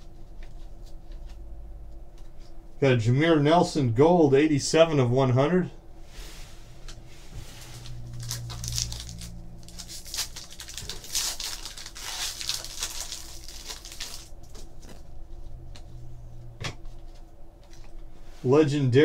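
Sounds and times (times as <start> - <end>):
faint low hum: 0.0 - 19.0
trading cards rustling: 7.6 - 15.9.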